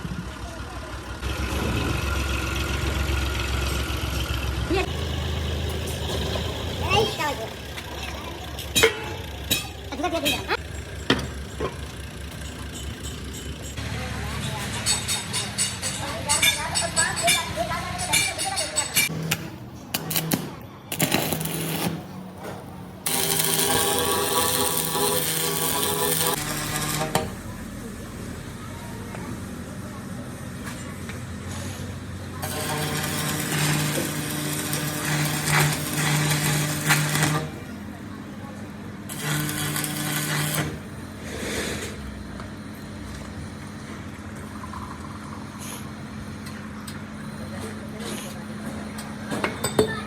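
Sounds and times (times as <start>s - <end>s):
vehicle engine humming: 0.0s - 32.4s
power tool motor whine: 23.1s - 27.2s.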